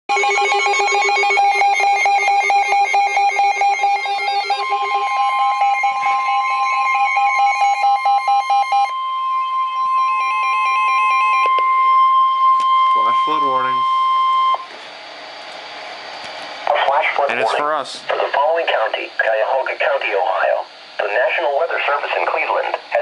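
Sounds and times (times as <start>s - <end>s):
electronic beeping tones: 0.1s - 14.7s
high-pitched alarm tone: 0.1s - 14.7s.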